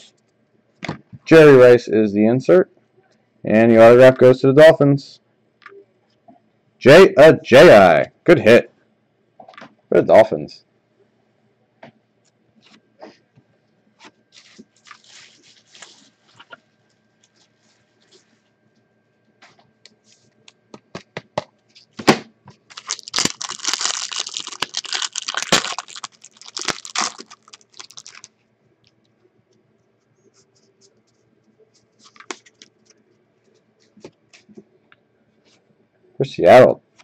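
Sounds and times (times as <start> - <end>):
card pack wrapper tearing and crinkling: 22.7 - 28.3
cards being handled: 31.8 - 33.1.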